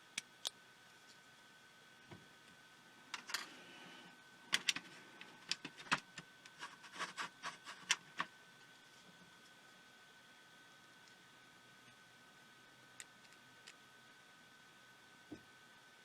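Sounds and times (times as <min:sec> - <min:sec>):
small parts clicking and tapping: 0:03.1 - 0:03.5, 0:04.5 - 0:08.3, 0:12.9 - 0:13.8.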